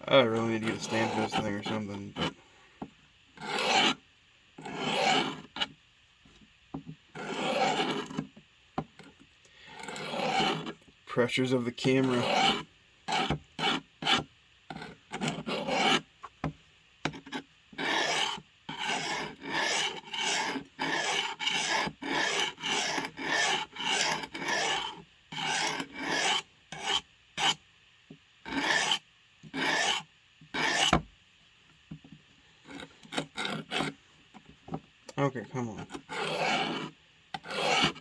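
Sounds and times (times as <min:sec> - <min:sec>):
blade scraping on sharpening stone: 0:03.4 - 0:04.0, 0:04.6 - 0:05.5, 0:07.2 - 0:08.2, 0:09.8 - 0:10.7, 0:12.0 - 0:14.2, 0:14.8 - 0:16.0, 0:17.1 - 0:27.6, 0:28.5 - 0:29.0, 0:29.6 - 0:30.0, 0:30.6 - 0:30.9, 0:36.0 - 0:38.0.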